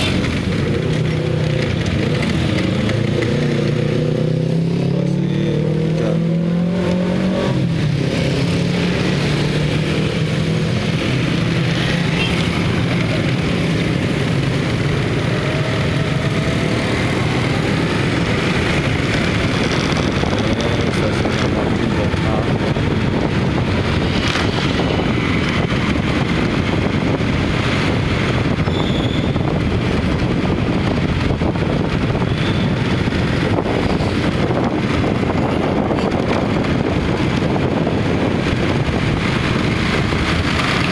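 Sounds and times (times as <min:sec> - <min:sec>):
vehicle road noise on wet road: 0:00.0 - 0:40.9
wind on microphone: 0:12.7 - 0:40.9.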